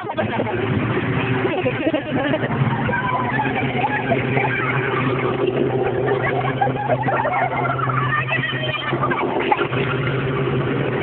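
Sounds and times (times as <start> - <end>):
people talking: 0.0 - 10.1
low engine-like hum: 0.0 - 11.0.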